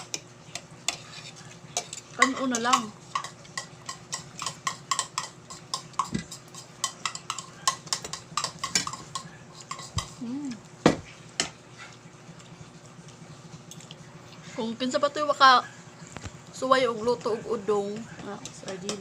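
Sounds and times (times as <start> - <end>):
cutlery clinking on a dish: 1.8 - 10.2.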